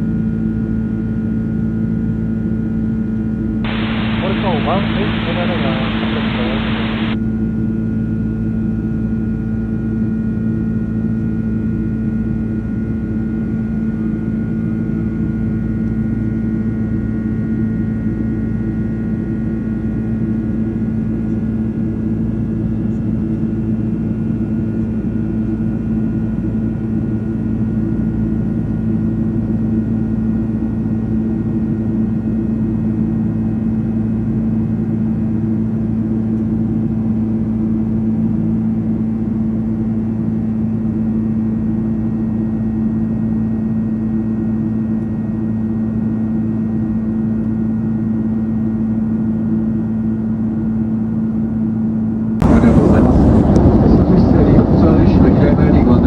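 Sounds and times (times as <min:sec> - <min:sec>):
jet cabin drone: 0:03.6 - 0:07.2, 0:52.0 - 0:56.0
radio static burst: 0:03.7 - 0:07.2, 0:52.4 - 0:53.5.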